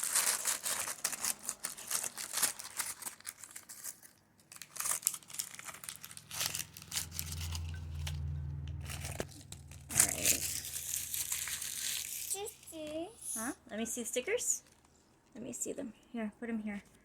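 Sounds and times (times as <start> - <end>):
plastic wrapping crinkling: 0.0 - 13.1
low steady hum: 4.9 - 17.0.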